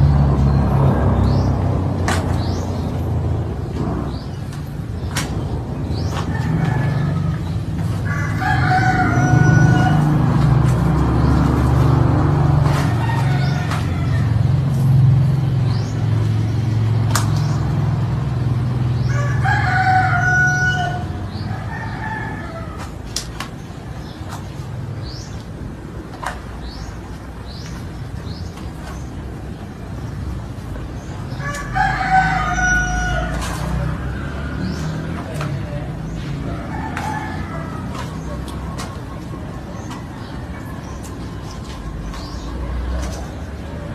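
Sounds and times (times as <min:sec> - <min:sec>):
rooster crowing: 0:08.0 - 0:10.3, 0:12.7 - 0:14.6, 0:19.1 - 0:22.8, 0:31.4 - 0:33.6, 0:36.5 - 0:38.0.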